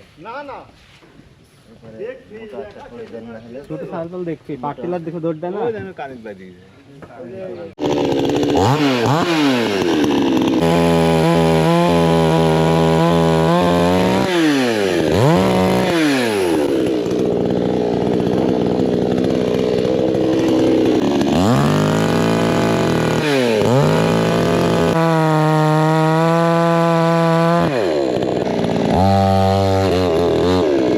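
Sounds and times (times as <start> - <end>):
chainsaw cutting wood: 7.8 - 30.9.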